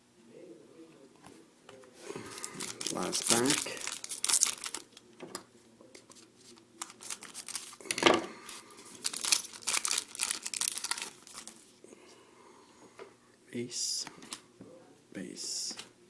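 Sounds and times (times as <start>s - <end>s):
wrapper crackling: 2.2s - 5.0s, 6.8s - 11.7s
wrapper tearing: 2.3s - 5.0s, 6.1s - 8.0s, 8.9s - 11.7s.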